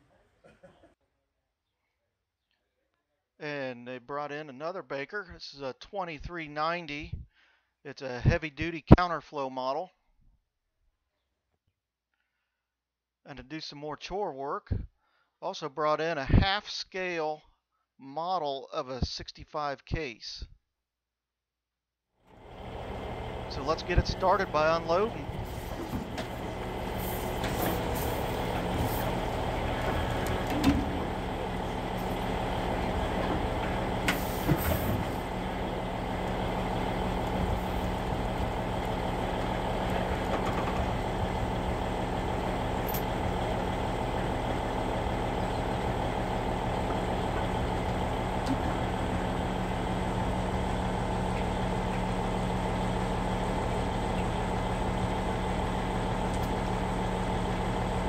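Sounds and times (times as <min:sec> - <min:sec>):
heavy engine idling: 0:22.3 - 0:58.0.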